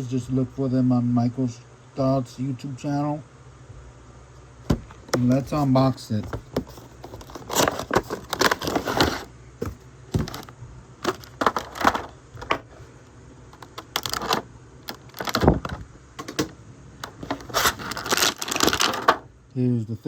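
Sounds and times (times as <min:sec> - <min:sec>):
packaging scrapes and rustles: 0:05.2 - 0:12.9, 0:13.6 - 0:15.6, 0:17.2 - 0:19.2.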